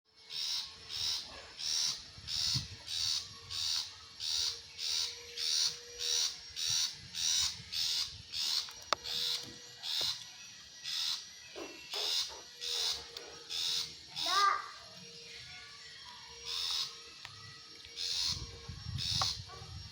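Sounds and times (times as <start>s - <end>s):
shrike harsh rasping call: 12.6s - 14.9s.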